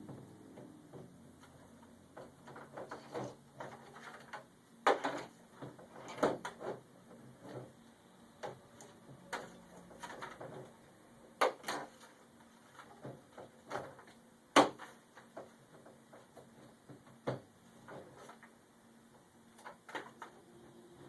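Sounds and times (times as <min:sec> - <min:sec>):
cable handling clicks and rustles: 0:00.1 - 0:07.8.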